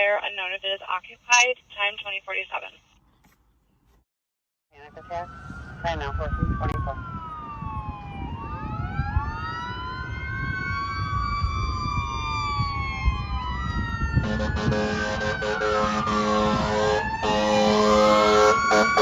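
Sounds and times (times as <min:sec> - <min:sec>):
fire engine siren wailing: 0:04.8 - 0:19.0
air horn blast: 0:14.2 - 0:19.0.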